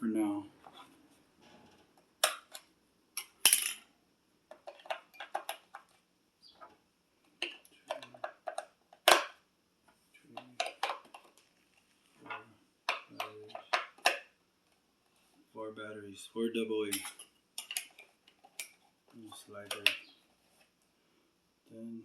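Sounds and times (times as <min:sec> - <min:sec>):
batteries clicking and clattering: 0:04.5 - 0:06.0.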